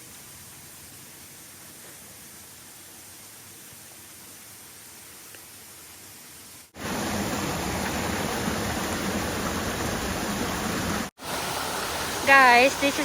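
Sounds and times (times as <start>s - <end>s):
waterfall rushing: 6.7s - 13.0s.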